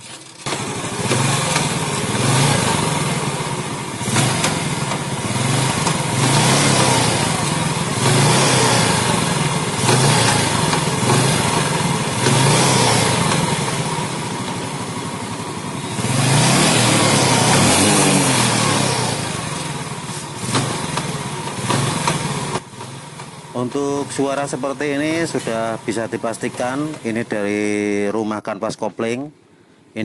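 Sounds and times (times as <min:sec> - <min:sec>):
motorcycle engine revving: 0:00.0 - 0:28.1
rough harsh clutch noise: 0:00.0 - 0:28.1.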